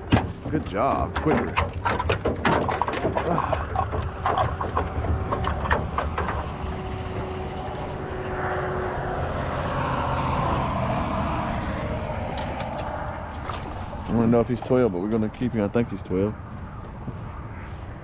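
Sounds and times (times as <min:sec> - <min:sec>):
clattering clicks and knocks: 0:00.0 - 0:08.0
engine drone: 0:03.0 - 0:18.0.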